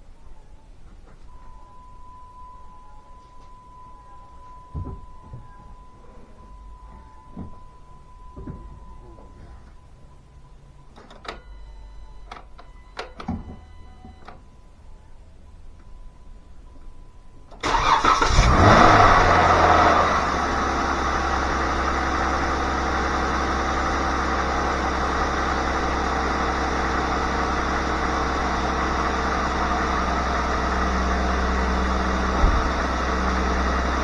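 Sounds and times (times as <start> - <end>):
car engine starting and idling: 17.5 - 34.0.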